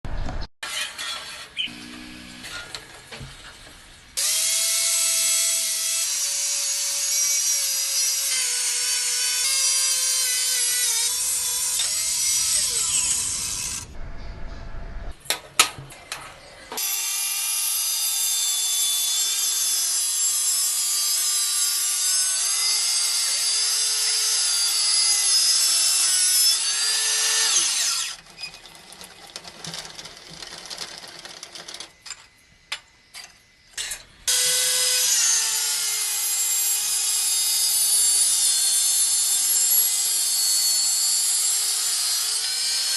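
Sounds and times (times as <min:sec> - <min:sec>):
power cutter cutting: 0:04.2 - 0:14.0, 0:16.8 - 0:28.2, 0:34.3 - 0:42.9.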